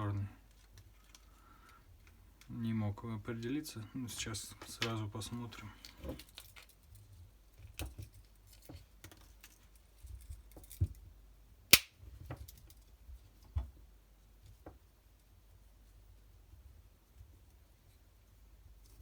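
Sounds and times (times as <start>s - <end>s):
sharp click: 11.7s - 11.9s.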